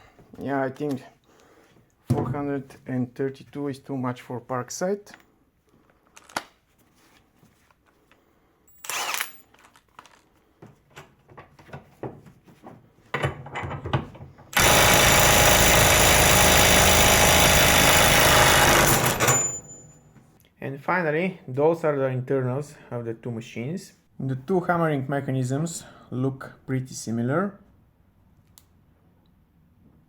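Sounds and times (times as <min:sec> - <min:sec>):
impact wrench hammering: 0:14.6 - 0:19.7.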